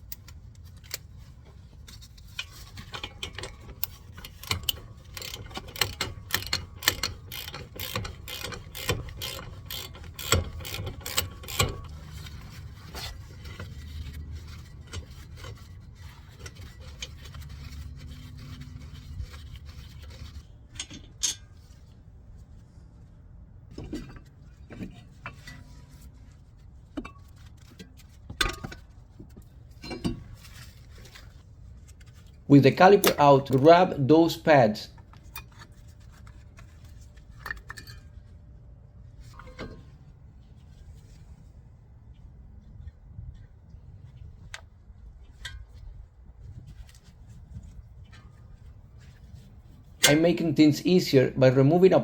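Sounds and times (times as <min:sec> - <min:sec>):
hand ratchet clicking rapidly: 0:03.8 - 0:12.0.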